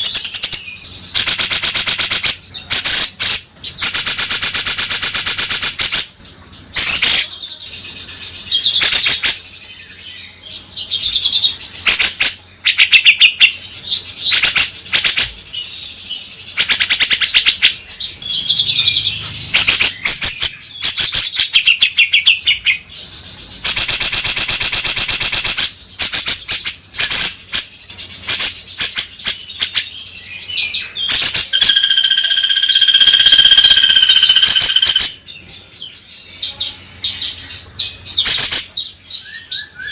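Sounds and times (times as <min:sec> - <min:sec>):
bird rattling chatter and whistles: 0:31.1 - 0:35.2.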